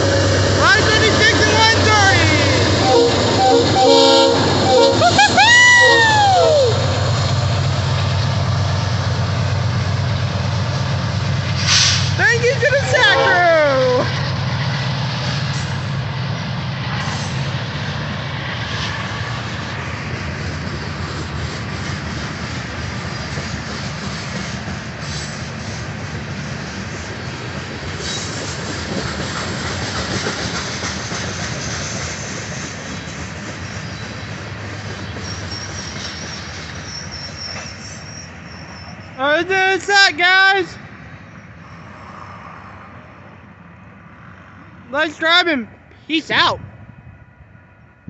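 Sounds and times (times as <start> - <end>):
freight train wheels rumbling: 0.0 - 48.0
wheels clicking over rail joints: 27.0 - 37.7
high wheel squeal: 35.0 - 39.2.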